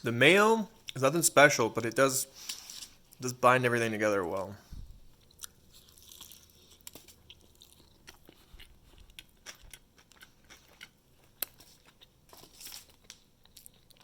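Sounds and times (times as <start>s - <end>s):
person chewing crunchy food: 5.1s - 14.0s.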